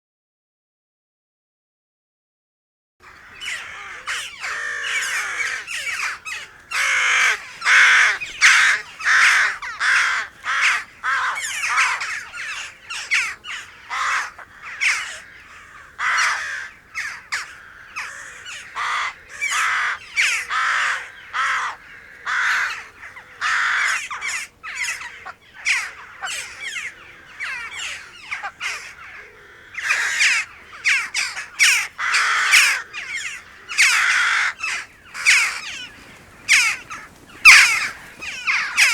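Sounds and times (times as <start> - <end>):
crows cawing: 3.0 - 38.9.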